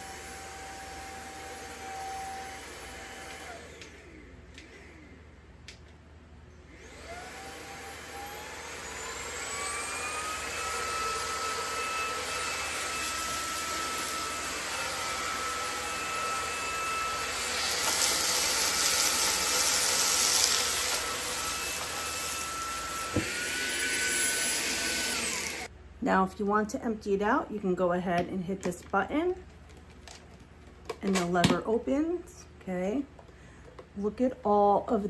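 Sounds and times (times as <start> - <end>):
vacuum motor whining: 0.0 - 5.3, 6.7 - 25.7.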